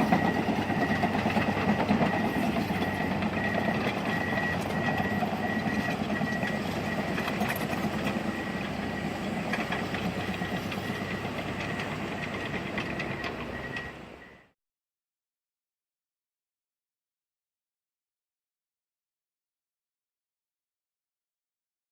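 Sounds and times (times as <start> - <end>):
high beeping: 0.0 - 7.4
diesel engine running: 0.0 - 14.5
steel tracks clanking: 0.0 - 14.5.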